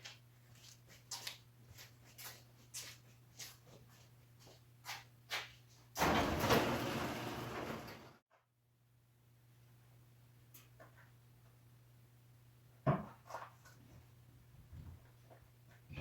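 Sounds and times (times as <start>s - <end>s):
footsteps: 0.0s - 5.9s.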